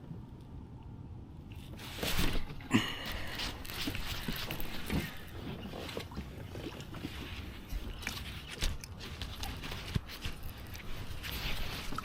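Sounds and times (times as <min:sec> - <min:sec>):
gear knocks clicks and rustles: 0:01.7 - 0:12.0.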